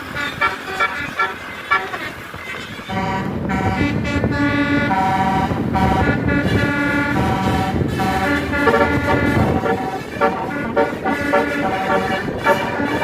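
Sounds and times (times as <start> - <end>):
air horn playing a tune: 0.0 - 13.0
low engine rumble: 0.0 - 13.0.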